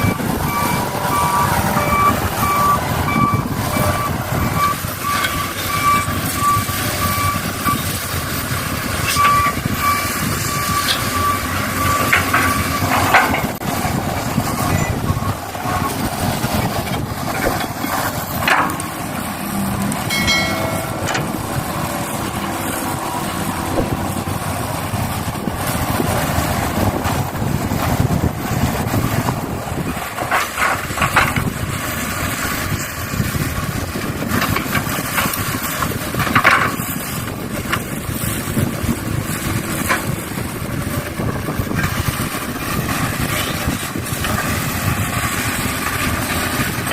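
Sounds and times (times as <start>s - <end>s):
heavy machinery engines: 0.0s - 46.9s.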